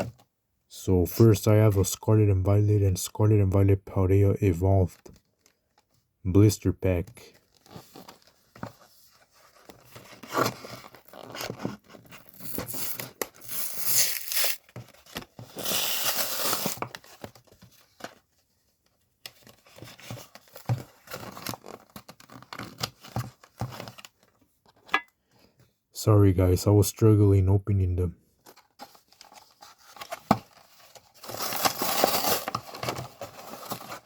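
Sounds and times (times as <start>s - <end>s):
plastic pack tearing and crinkling: 10.2s - 17.3s, 20.9s - 24.1s, 31.0s - 34.0s.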